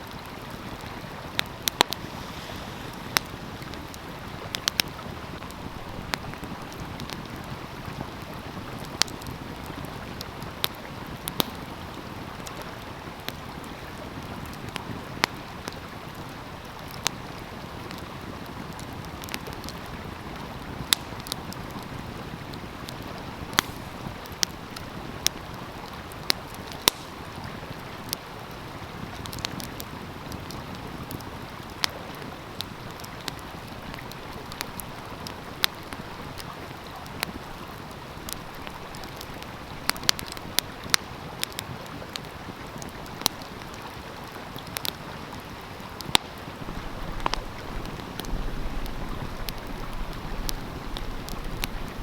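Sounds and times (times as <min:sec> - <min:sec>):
stream rushing: 0:00.0 - 0:12.4, 0:43.5 - 0:52.0
wood fire crackling and popping: 0:00.0 - 0:52.0.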